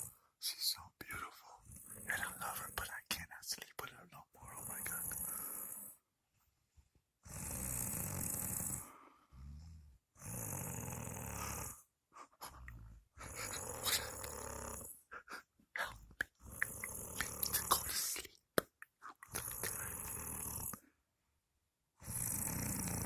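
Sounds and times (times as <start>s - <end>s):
woman snoring: 4.5s - 6.0s, 7.3s - 11.8s, 12.4s - 18.3s, 19.2s - 20.8s, 22.0s - 23.0s.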